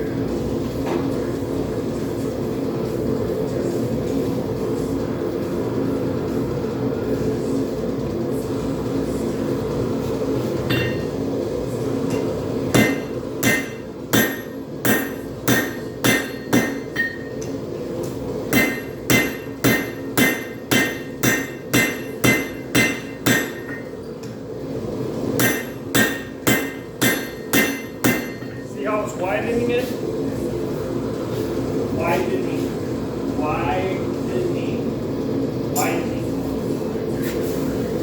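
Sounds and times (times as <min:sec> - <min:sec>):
steady background noise: 0:00.0 - 0:38.0
hammer clanging on anvil: 0:10.7 - 0:11.1, 0:12.1 - 0:17.5, 0:18.6 - 0:23.9, 0:25.4 - 0:28.7.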